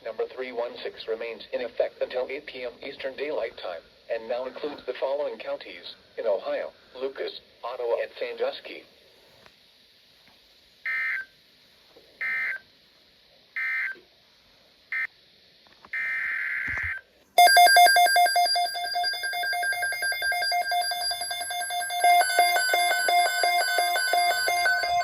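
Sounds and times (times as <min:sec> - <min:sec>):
pulsing electronic alarm: 0:16.0 - 0:25.0
digital data bursts: 0:17.4 - 0:25.0.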